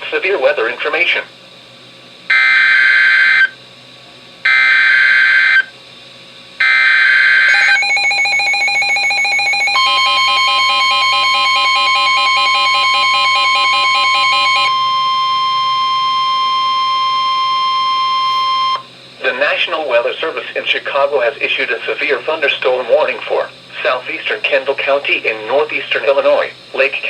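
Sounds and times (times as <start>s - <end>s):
steady warning alarm tone: 2.3s - 3.6s, 4.4s - 5.7s, 6.6s - 19.4s
buzzy digital header tones: 7.5s - 18.8s
radio receivers beeping: 7.5s - 18.9s.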